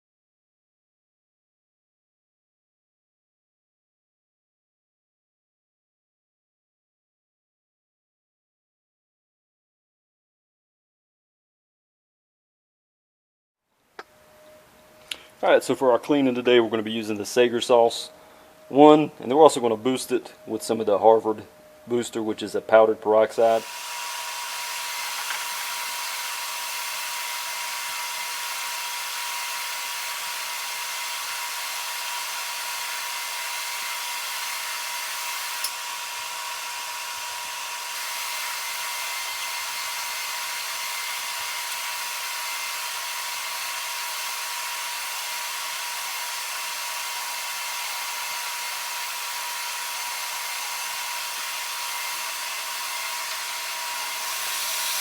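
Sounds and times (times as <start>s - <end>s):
carpet cleaner motor whine: 14.0s - 15.4s, 23.3s - 55.0s.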